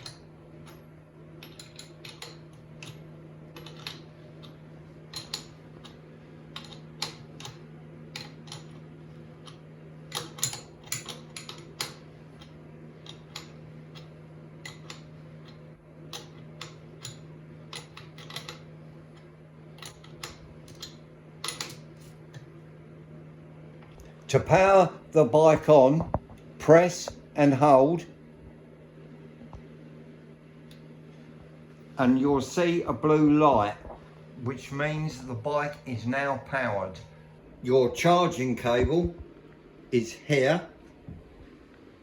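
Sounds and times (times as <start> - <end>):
steady low hum: 0.0 - 42.0
spanner clicking on metal: 1.4 - 3.0, 3.6 - 6.0, 9.4 - 18.6.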